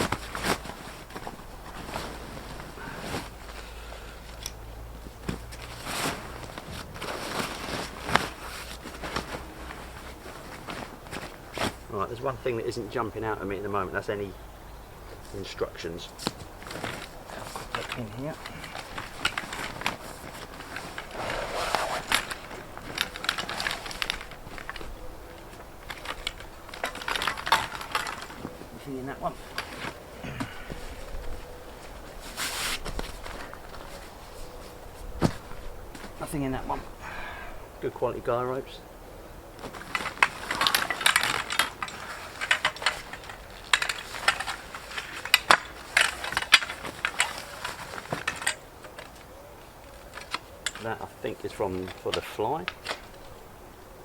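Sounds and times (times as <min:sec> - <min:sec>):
bags and packaging rustling: 0:00.0 - 0:14.0, 0:15.1 - 0:37.0, 0:39.3 - 0:53.5
sharp clicks of parts: 0:39.9 - 0:50.9.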